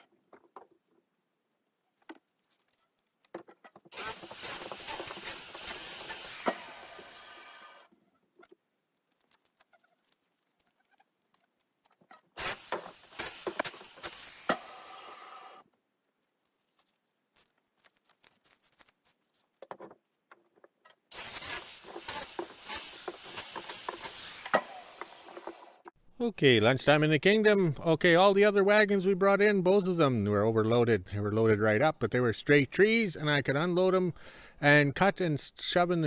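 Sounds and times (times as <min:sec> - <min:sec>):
circular saw cutting wood: 0:03.9 - 0:07.9, 0:12.4 - 0:15.6, 0:21.1 - 0:25.9.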